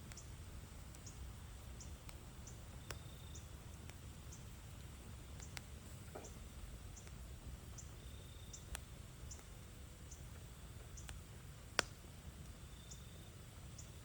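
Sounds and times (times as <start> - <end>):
wood fire crackling: 0.0 - 14.0
sharp pop from fire: 11.7 - 12.0.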